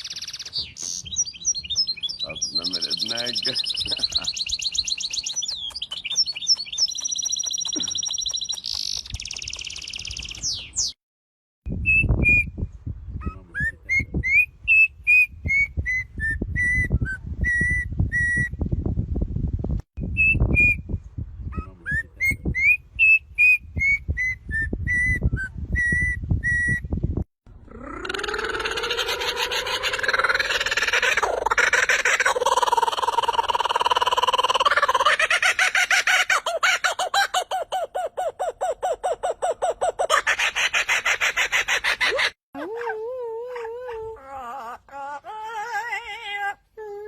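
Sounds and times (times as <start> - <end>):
bird trilling: 0.0 - 11.0, 27.7 - 42.4.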